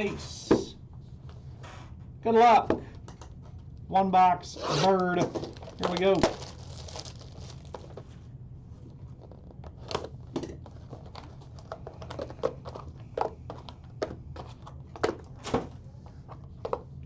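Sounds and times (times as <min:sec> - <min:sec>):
wrappers tearing and crinkling: 0:04.6 - 0:08.0.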